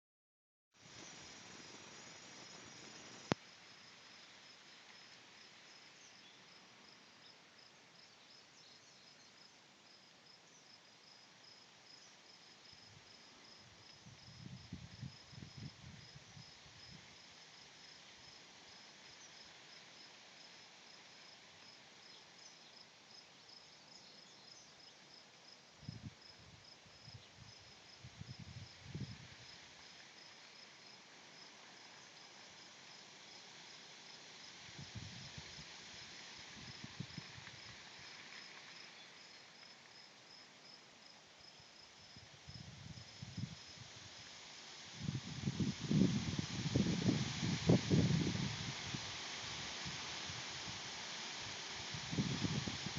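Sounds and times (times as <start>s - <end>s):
wind rustling through trees: 0.8s - 52.9s
wind gusts buffeting microphone: 45.0s - 49.1s, 51.9s - 52.9s.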